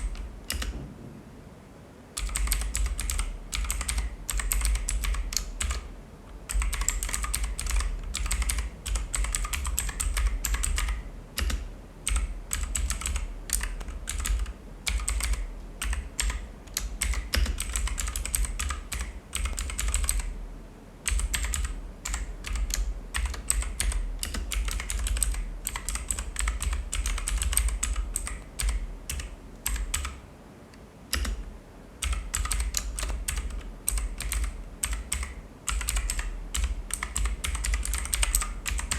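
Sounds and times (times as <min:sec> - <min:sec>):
fast typing on mechanical keyboard: 0:02.2 - 0:05.9, 0:06.5 - 0:20.3, 0:21.0 - 0:30.2, 0:32.0 - 0:38.9.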